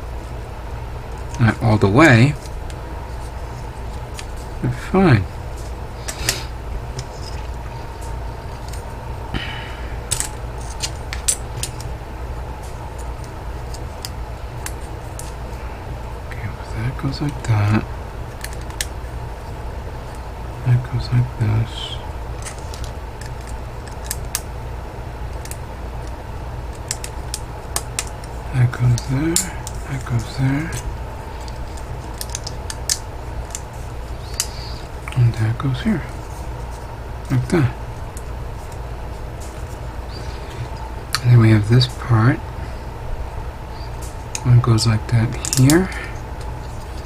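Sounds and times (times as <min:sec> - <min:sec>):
steady low hum: 0:00.0 - 0:47.0
plastic parts clicking: 0:31.4 - 0:33.6, 0:45.4 - 0:45.7.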